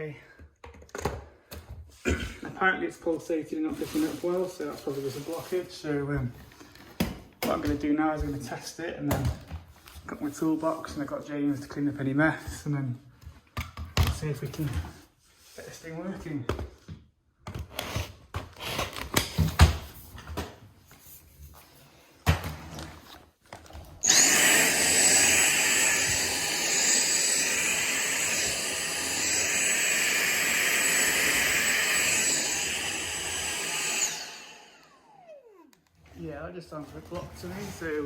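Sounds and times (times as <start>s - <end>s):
vacuum cleaner motor whining: 24.0s - 35.9s.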